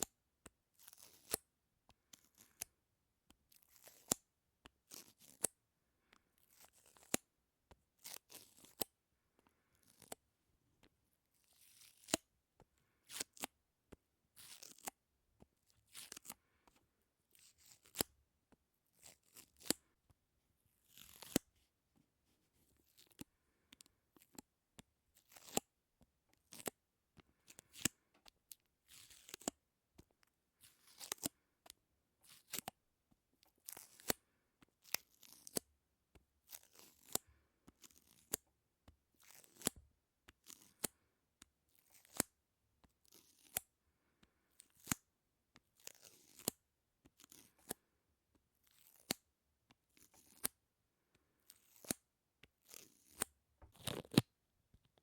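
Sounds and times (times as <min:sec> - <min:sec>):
sticky clicks and peeling: 0:52.8 - 0:54.3.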